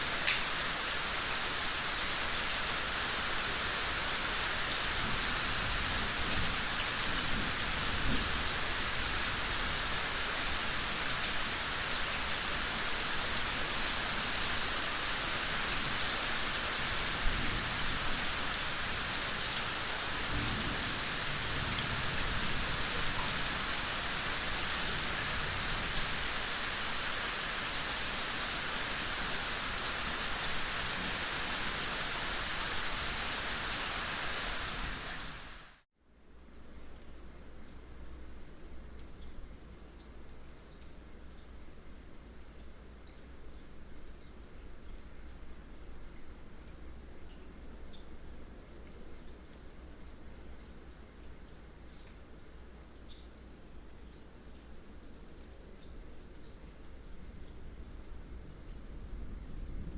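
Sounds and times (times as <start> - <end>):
rain pattering: 0.0 - 59.9
thunder rumbling: 58.3 - 59.9.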